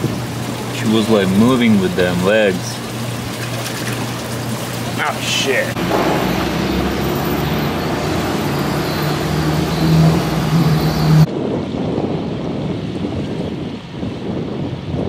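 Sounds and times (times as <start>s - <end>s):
engine humming: 0.0s - 11.3s
waves: 0.0s - 11.3s
wind noise: 5.7s - 15.0s.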